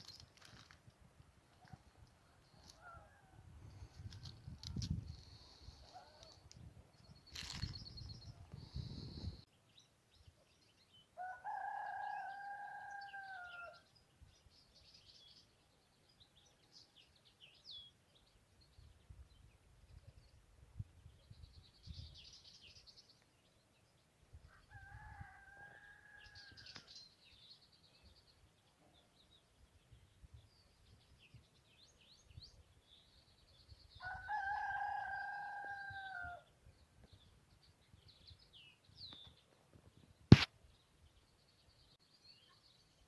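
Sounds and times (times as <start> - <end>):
rooster crowing: 11.2 - 13.8, 24.6 - 26.6, 34.0 - 36.4
small birds chirping: 26.2 - 43.0
sharp click: 40.3 - 40.5.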